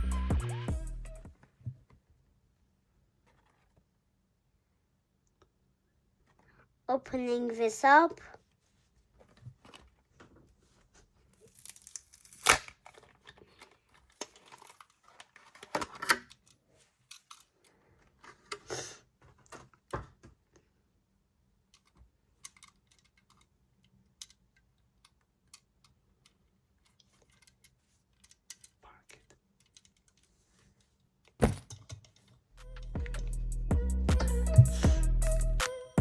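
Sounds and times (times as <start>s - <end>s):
blister package ripping and crinkling: 11.4s - 16.2s.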